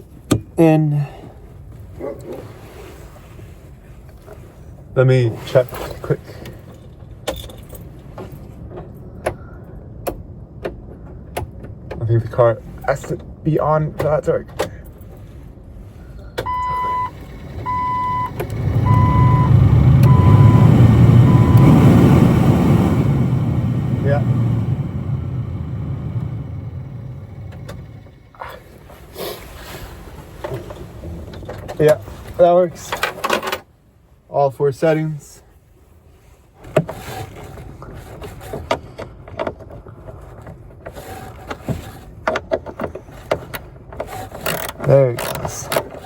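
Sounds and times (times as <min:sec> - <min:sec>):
dashboard warning chime beeping: 0:16.4 - 0:23.4
heater blower fan rushing air: 0:16.4 - 0:28.4
parts clicking and knocking: 0:38.6 - 0:46.0.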